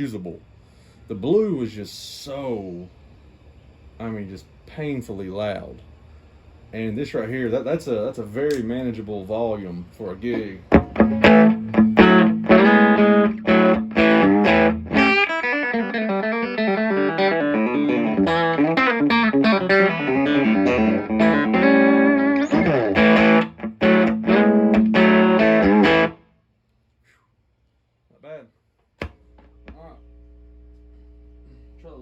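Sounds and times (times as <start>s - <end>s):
electric guitar playing: 10.3s - 26.2s.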